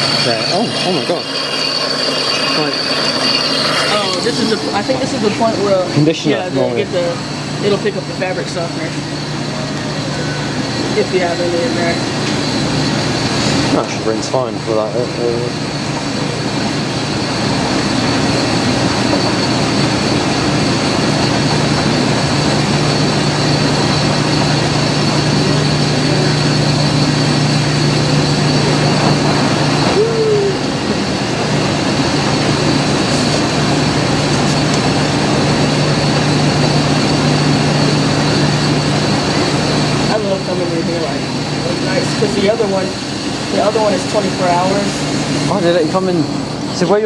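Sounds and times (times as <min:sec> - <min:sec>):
laundry machines droning: 0:00.0 - 0:47.0.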